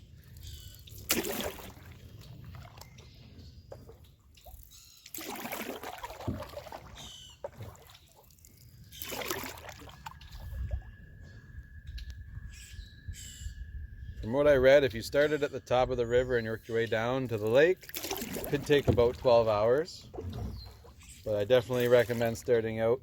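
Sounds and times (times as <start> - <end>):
bird calling: 0.2 - 1.0, 6.7 - 22.9
paddle splashing in water: 0.8 - 3.0, 3.6 - 10.7, 17.8 - 22.5
water dripping: 4.3 - 10.8.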